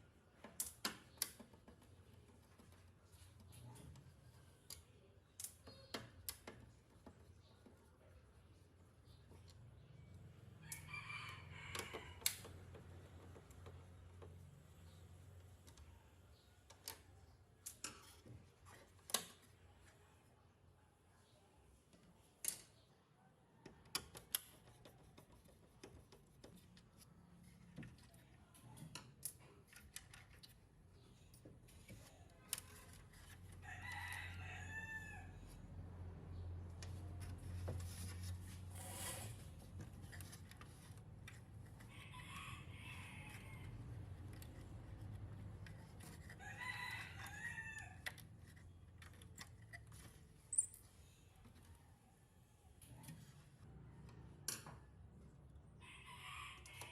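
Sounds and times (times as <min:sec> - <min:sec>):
faint rooster crowing: 0:10.5 - 0:12.8, 0:31.9 - 0:36.4, 0:41.8 - 0:45.1, 0:46.0 - 0:48.6, 0:55.7 - 0:56.9.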